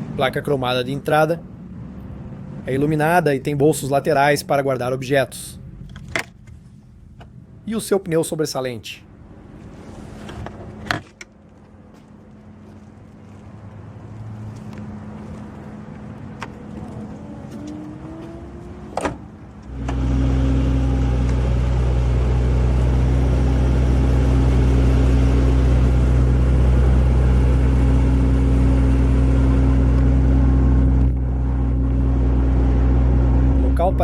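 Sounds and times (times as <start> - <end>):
car engine idling: 11.9 - 34.0
trunk lid motor whining: 16.4 - 34.0
trunk lid latching thud: 19.0 - 19.2.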